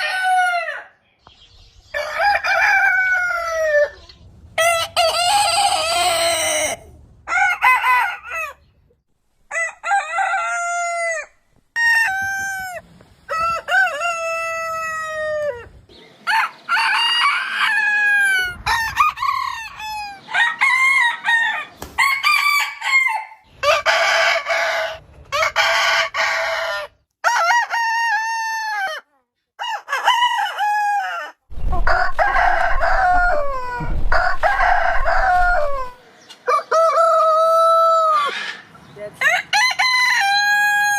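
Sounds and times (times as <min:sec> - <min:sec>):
roosters crowing: 0:00.0 - 0:01.0, 0:01.8 - 0:08.8, 0:09.4 - 0:40.9
low rumble: 0:31.5 - 0:36.0.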